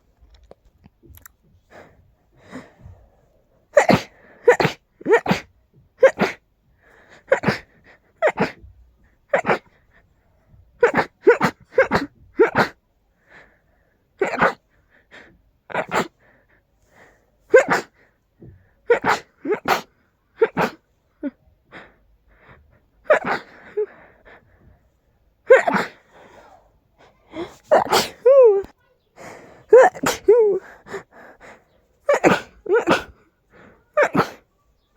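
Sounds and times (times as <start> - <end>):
person sneezing: 3.8 - 6.4, 7.2 - 8.7, 9.3 - 9.7, 10.8 - 12.8, 14.2 - 14.6, 15.7 - 16.2, 17.5 - 20.8, 23.1 - 23.9, 25.5 - 34.5.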